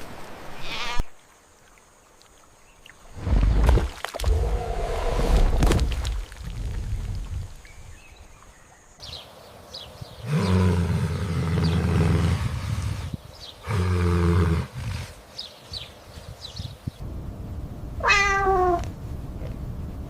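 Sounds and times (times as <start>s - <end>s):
small birds chirping: 7.6s - 13.9s, 15.2s - 17.0s.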